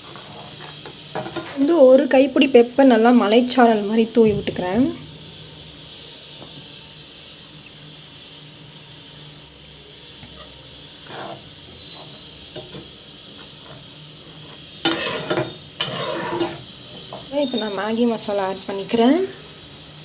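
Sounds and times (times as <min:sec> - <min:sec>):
sauce simmering in a pan: 0:00.0 - 0:20.0.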